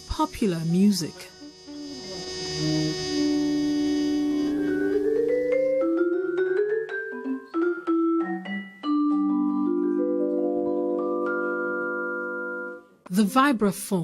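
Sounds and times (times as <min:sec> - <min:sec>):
vibraphone notes ringing: 0:04.6 - 0:12.8.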